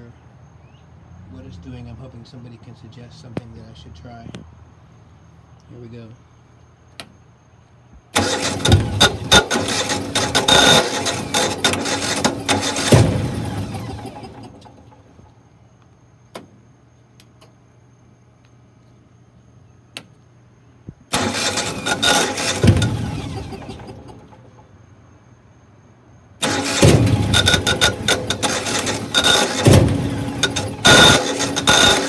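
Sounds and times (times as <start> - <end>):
generator engine cranking: 8.1 - 15.4, 21.1 - 24.7, 26.4 - 32.0.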